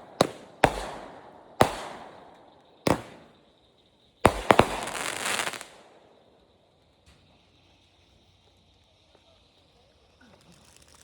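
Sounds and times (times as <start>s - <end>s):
firework bangs: 0.0s - 6.2s
firework hiss: 0.0s - 11.0s
fizzing firework shower: 0.0s - 11.0s.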